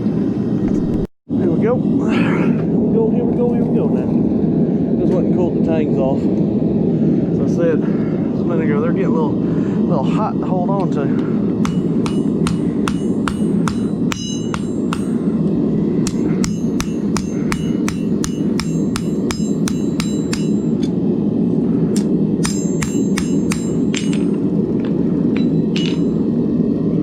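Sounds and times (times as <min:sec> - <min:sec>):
gas forge burner roar: 0:06.9 - 0:27.0
hammer blows on hot steel: 0:11.1 - 0:21.0, 0:21.8 - 0:24.6.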